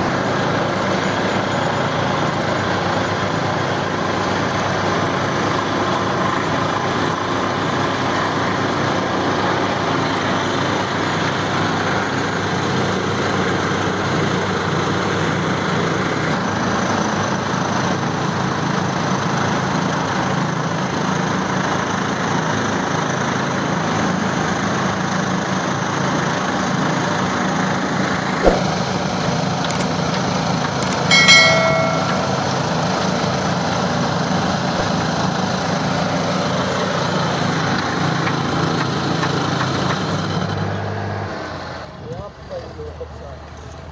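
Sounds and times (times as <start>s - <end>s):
sharp knock: 28.4s - 28.8s
brief ringing tone: 30.8s - 32.8s.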